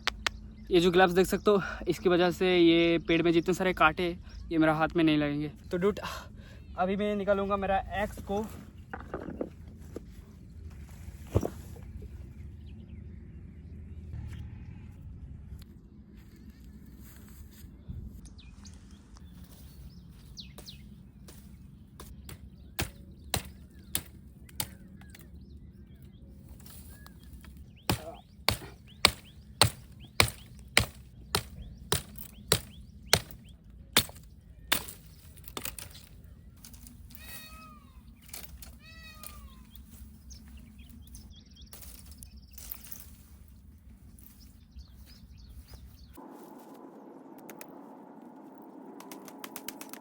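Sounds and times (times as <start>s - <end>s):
axe chopping branches: 20.6s - 25.3s, 26.6s - 36.9s.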